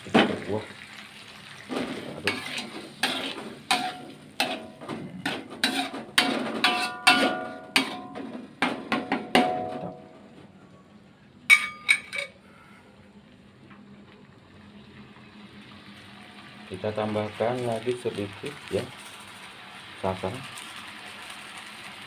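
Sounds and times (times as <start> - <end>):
utensil clanking in a pan: 1.7 - 10.1, 11.5 - 12.4.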